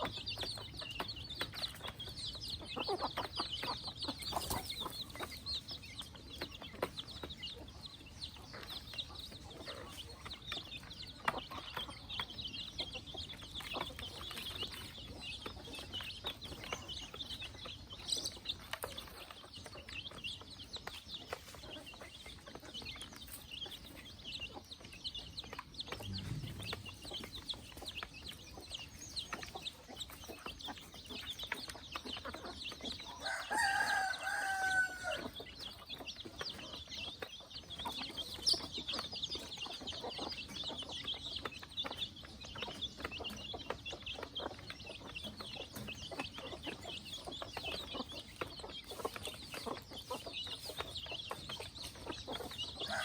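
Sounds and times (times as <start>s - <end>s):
chickens clucking: 0.0s - 53.0s
rooster crowing: 33.2s - 35.3s.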